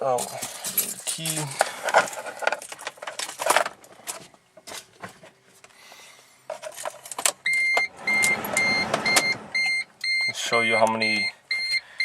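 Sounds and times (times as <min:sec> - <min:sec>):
electronic warning chime beeping: 0:07.5 - 0:11.8.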